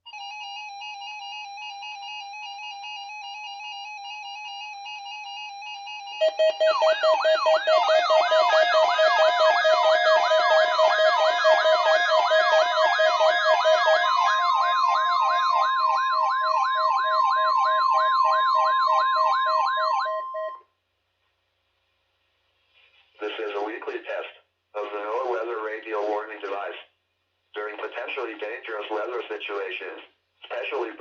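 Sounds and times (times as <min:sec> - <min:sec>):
steady warning alarm tone: 0:00.2 - 0:20.6
rising whooping alarm: 0:00.8 - 0:20.6
steady beeping tone: 0:05.9 - 0:20.6.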